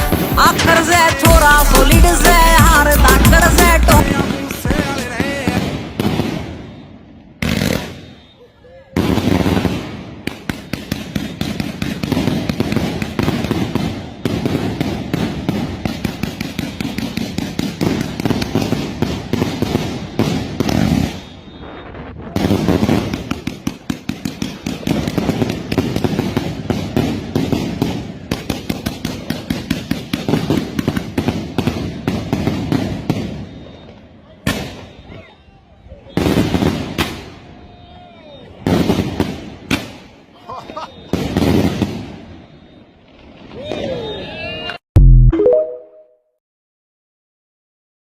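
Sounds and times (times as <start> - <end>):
fireworks cracking and banging: 0.0 - 35.1, 36.1 - 37.7, 38.5 - 43.9
rumble of distant fireworks: 4.0 - 35.1, 35.9 - 40.3, 41.0 - 43.9.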